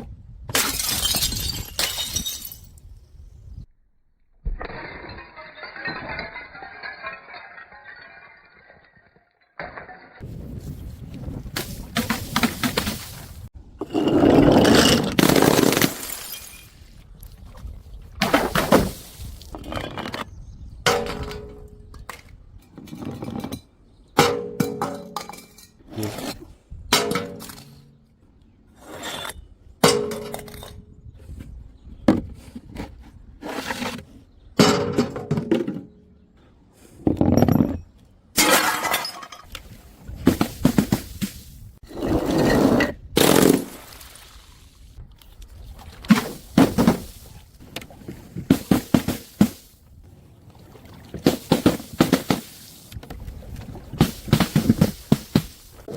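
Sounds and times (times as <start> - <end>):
bottles shattering: 0.5 - 2.9, 4.5 - 10.2, 14.5 - 16.9, 24.2 - 25.8, 37.4 - 41.7, 46.1 - 47.4, 48.5 - 49.7, 51.2 - 52.8, 54.0 - 55.7
glass bottles clinking on stairs: 0.6 - 2.8, 4.7 - 10.2.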